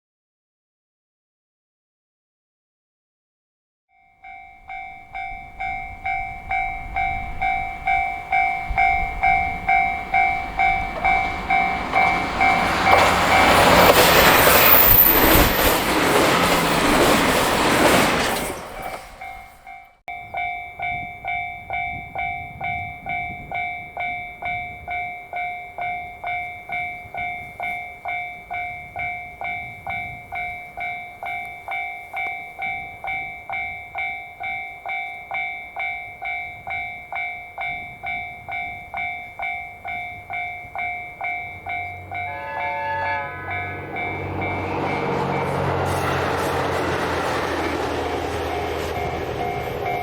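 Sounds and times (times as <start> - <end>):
level crossing bell ringing: 4.0 - 15.1, 18.7 - 50.0
train rumble: 4.5 - 50.0
train horn: 8.6 - 15.9, 41.5 - 49.2.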